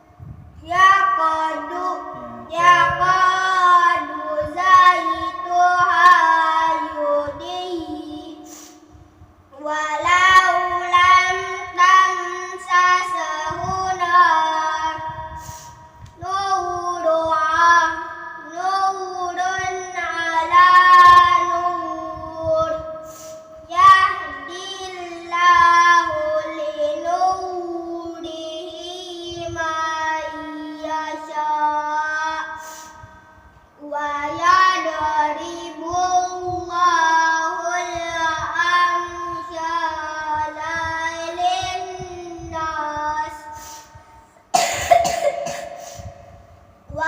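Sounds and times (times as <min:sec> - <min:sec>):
child reciting in chanted style: 0:00.0 - 0:47.0.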